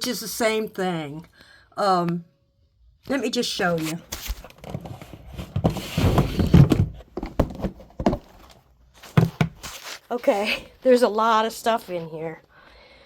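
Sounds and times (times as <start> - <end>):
papers rustling: 3.8 - 10.2.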